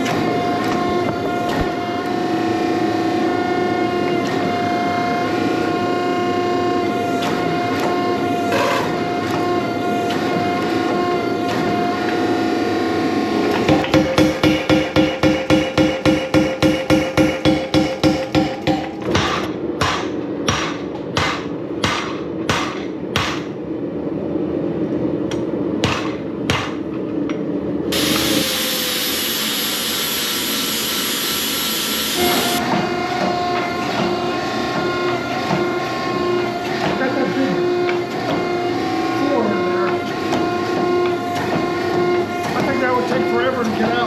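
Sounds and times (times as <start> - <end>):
power hammer blows on hot metal: 13.6 - 23.5
motor hum: 27.8 - 43.1
loud steady hiss: 27.9 - 32.6.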